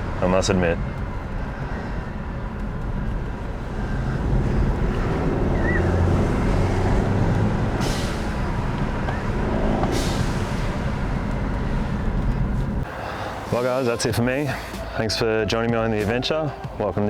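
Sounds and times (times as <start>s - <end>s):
road noise: 0.0s - 17.0s
car engine accelerating: 0.8s - 13.6s
blow-off valve hissing whoosh: 7.8s - 11.9s.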